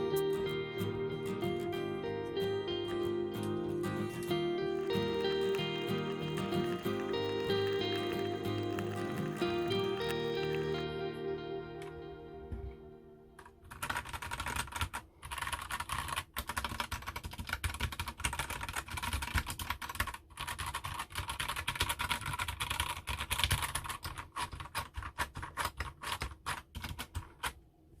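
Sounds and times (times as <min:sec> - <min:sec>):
mechanical keyboard typing: 0:04.0 - 0:10.8, 0:13.6 - 0:27.6.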